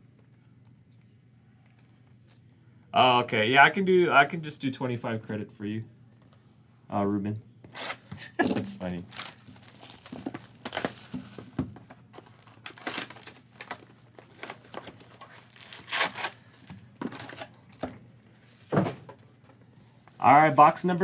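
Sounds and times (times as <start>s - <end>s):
plastic wrapping crinkling and tearing: 7.8s - 17.8s.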